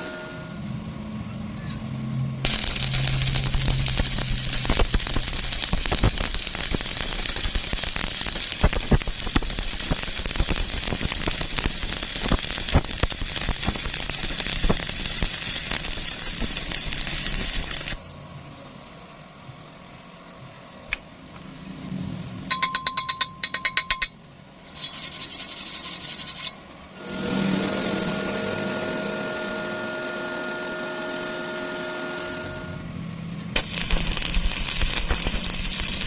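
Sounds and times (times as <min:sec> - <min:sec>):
welding arc crackling and popping: 0:02.4 - 0:18.0, 0:33.6 - 0:36.0.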